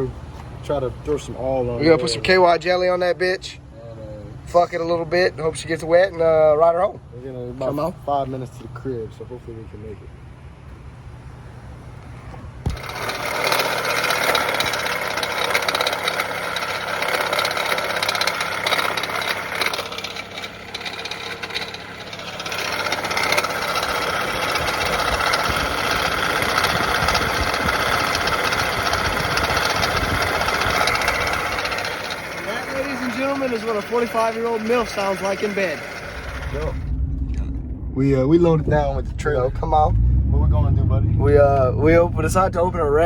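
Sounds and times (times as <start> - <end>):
car engine starting and running: 10.7 - 43.0
alternator screeching grind: 12.6 - 43.0.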